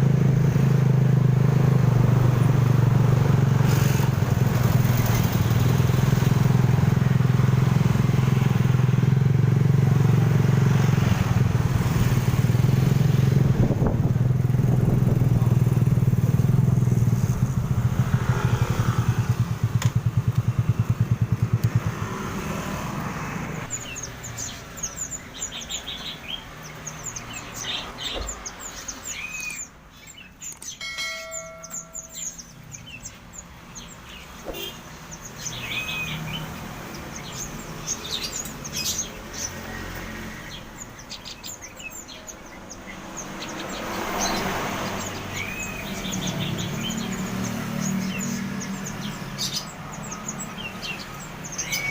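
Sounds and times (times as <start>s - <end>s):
motorcycle engine running: 0.0s - 22.5s
small birds chirping: 0.0s - 51.9s.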